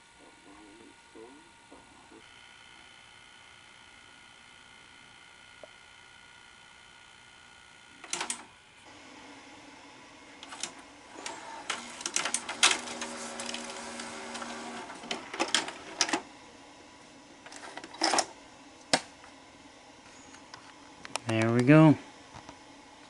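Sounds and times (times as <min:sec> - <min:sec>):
cassette mechanism clicking: 0:08.0 - 0:08.5, 0:10.4 - 0:16.3
motor whir: 0:10.3 - 0:16.3.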